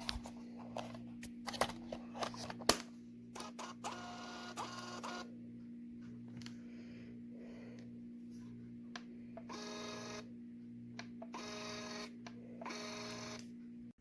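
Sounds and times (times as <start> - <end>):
steady low hum: 0.0 - 14.0
label printer motor whirring: 3.4 - 5.3, 9.4 - 10.3, 11.2 - 13.4.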